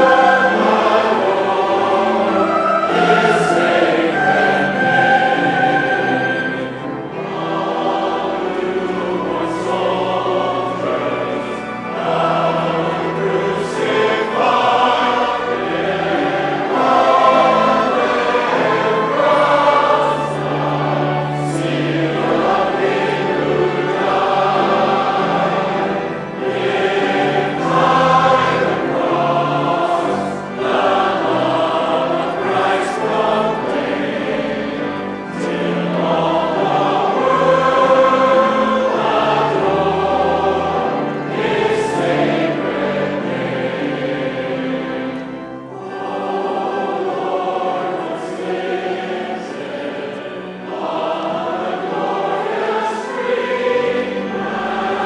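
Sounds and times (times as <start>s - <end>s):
choir singing: 0.0s - 55.0s.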